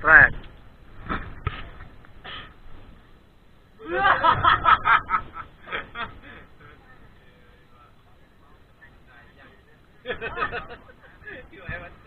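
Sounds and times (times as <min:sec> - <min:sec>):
man laughing: 0:03.8 - 0:06.6, 0:10.0 - 0:11.5.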